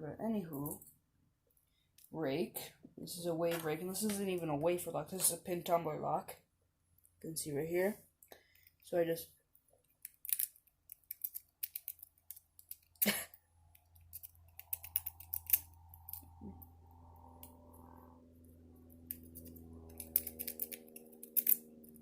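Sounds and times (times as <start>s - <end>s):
faint steady hum: 0.0s - 22.0s
lock pick scraping and clicking: 9.8s - 13.1s, 13.7s - 16.4s, 18.9s - 22.0s.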